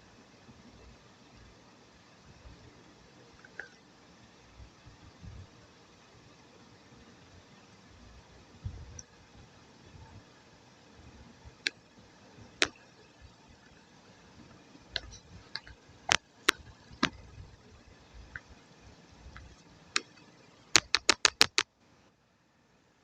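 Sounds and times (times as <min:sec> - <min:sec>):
clicks and taps of utensils: 0:20.8 - 0:21.6.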